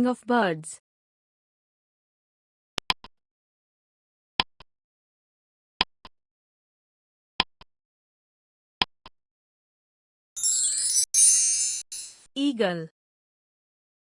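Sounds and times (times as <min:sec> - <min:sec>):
bright shimmering chime: 0:10.4 - 0:12.3.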